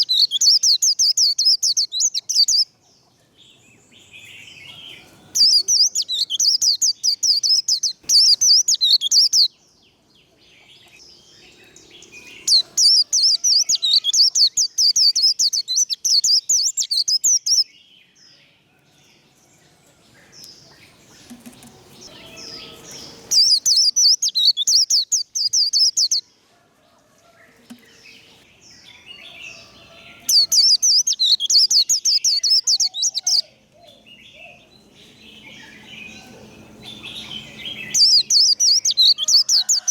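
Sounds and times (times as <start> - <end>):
faint bird chirps: 4.2 - 9.6, 10.4 - 18.9, 20.3 - 26.3, 27.4 - 39.9
bird twittering warble: 20.5 - 26.2.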